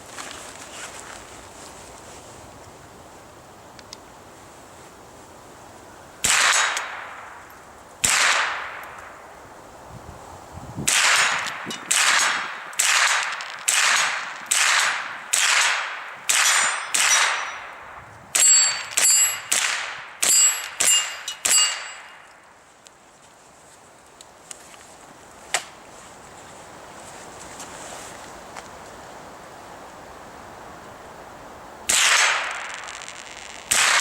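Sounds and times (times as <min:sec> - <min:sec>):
rifle shots: 0:06.2 - 0:07.2, 0:08.0 - 0:09.0, 0:10.9 - 0:17.7, 0:18.4 - 0:22.1, 0:31.9 - 0:34.0
bullets ringing on steel target: 0:16.3 - 0:17.7, 0:18.4 - 0:22.3.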